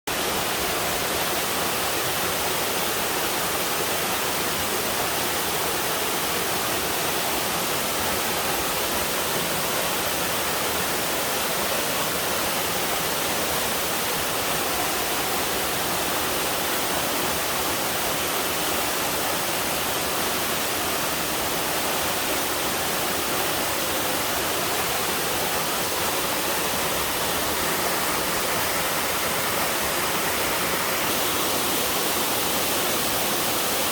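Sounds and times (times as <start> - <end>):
waterfall rushing: 0.1 - 33.9.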